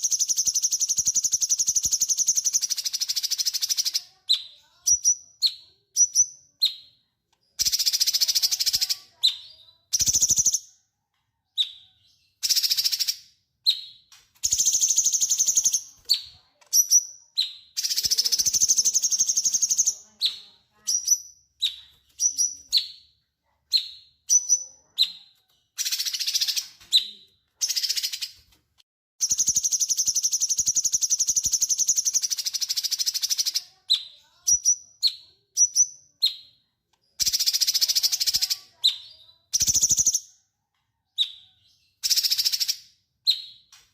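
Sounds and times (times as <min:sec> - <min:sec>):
songbird trilling and chirping: 0:00.0 - 0:10.8, 0:11.5 - 0:23.1, 0:29.2 - 0:40.4.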